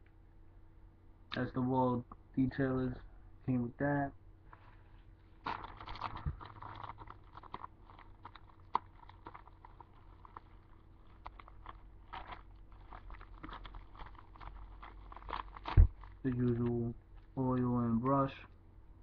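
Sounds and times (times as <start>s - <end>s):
packaging crinkling: 5.3s - 17.4s
small clicks and crackles: 5.4s - 18.6s.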